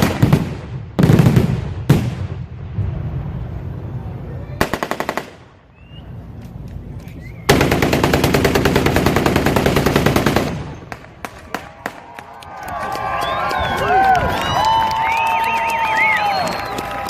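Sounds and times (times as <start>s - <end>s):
machine gun firing: 4.6s - 5.4s, 7.5s - 11.0s.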